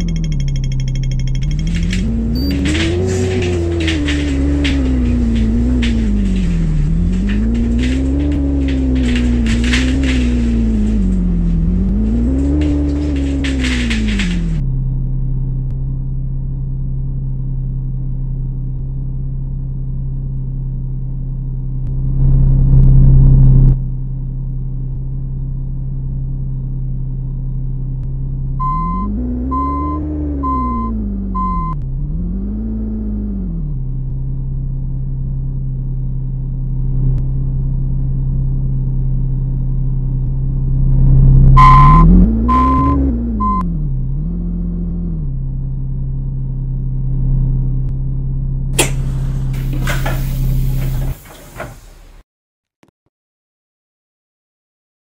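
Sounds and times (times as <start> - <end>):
bus diesel engine revving: 1.4 - 14.6, 28.6 - 33.7, 41.0 - 45.5, 48.8 - 52.2
vehicle beeper short beeps: 2.4 - 2.6, 28.6 - 31.8, 41.6 - 43.7.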